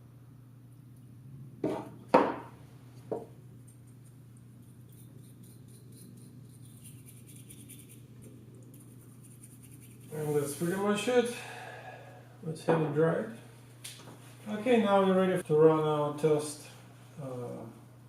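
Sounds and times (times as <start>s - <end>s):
brush scrubbing circuit board: 4.6s - 10.8s.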